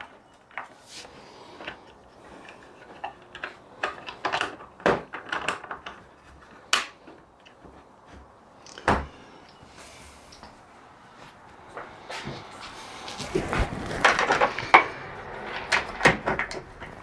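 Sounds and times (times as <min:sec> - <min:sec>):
hard panels clicking and knocking: 0:13.5 - 0:17.0.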